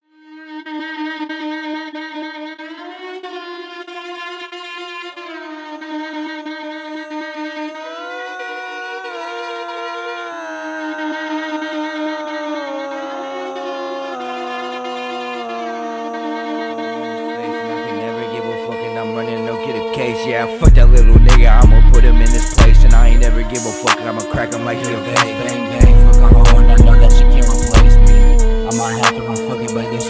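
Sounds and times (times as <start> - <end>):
low bass notes: 20.6 - 23.6, 25.8 - 29.4
melodic lead sliding between pitches: 20.6 - 30.0.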